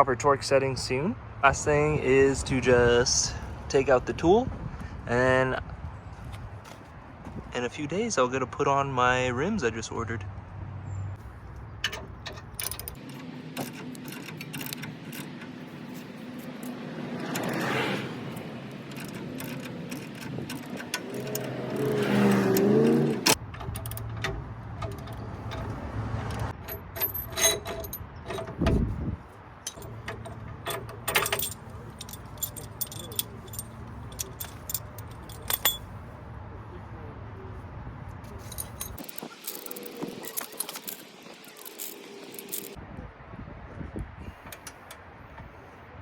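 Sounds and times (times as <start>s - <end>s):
metal tools clinking and rattling: 11.8s - 28.8s, 29.6s - 36.0s, 38.3s - 42.8s, 44.4s - 45.0s.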